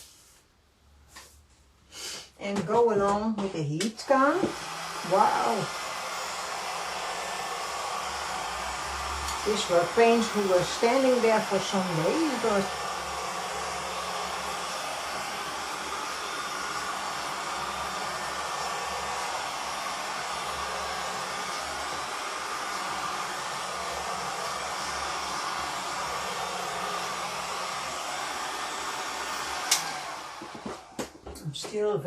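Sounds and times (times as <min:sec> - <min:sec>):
heat gun blowing air: 0:03.9 - 0:31.2.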